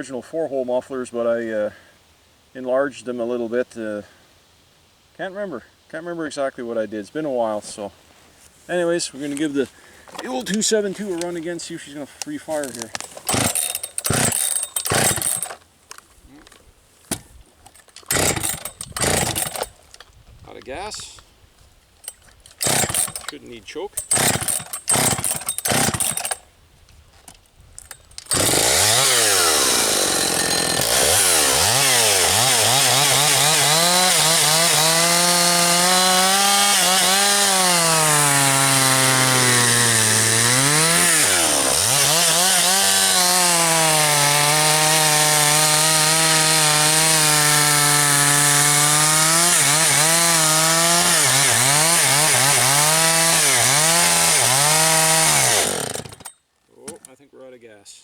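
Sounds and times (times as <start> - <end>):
chainsaw cutting wood: 12.5 - 15.7, 17.1 - 20.1, 22.0 - 26.5, 27.3 - 56.4.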